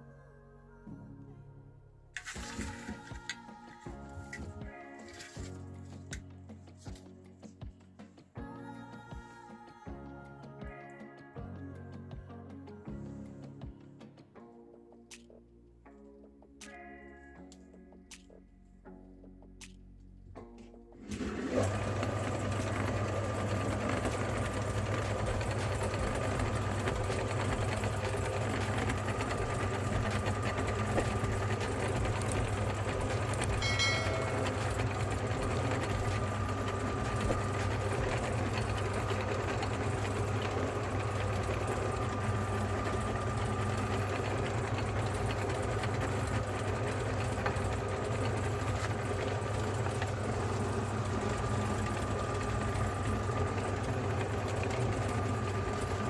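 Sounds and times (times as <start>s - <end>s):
meat grinder motor humming: 21.0s - 56.0s.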